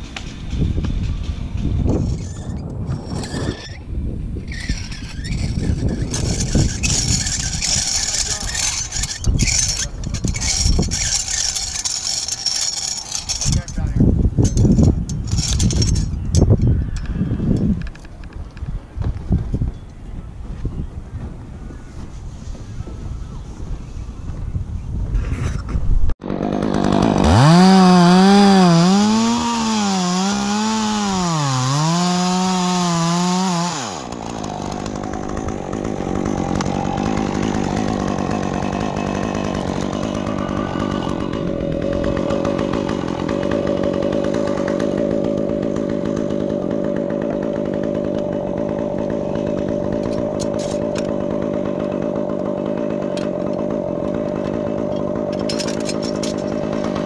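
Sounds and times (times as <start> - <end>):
chainsaw cutting wood: 4.4 - 16.6, 26.2 - 57.0.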